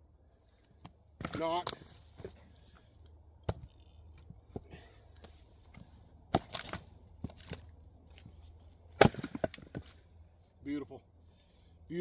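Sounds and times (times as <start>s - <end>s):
axe striking wood: 6.3s - 7.6s, 9.0s - 9.9s
wood cracking: 6.3s - 8.3s, 9.0s - 10.0s.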